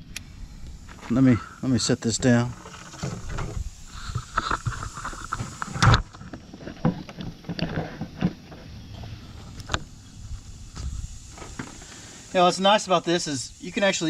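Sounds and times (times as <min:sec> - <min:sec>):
tool being set down: 0:02.6 - 0:03.6.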